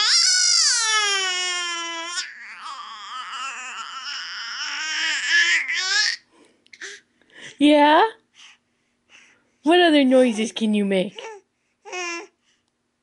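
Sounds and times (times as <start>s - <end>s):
baby squealing: 0.0s - 6.2s.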